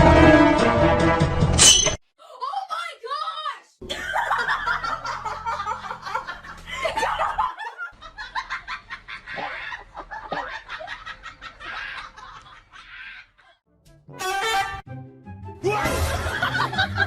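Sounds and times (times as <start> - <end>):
person laughing: 3.8 - 13.6, 15.8 - 17.0.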